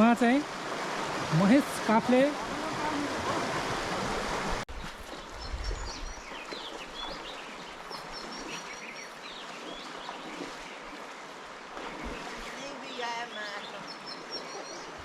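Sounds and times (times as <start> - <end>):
river water rushing: 0.0 - 15.0
small birds chirping: 4.7 - 11.3, 11.9 - 15.0.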